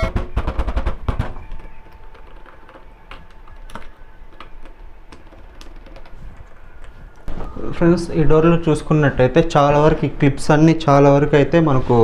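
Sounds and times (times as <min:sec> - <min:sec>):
thumps: 0:00.0 - 0:06.6.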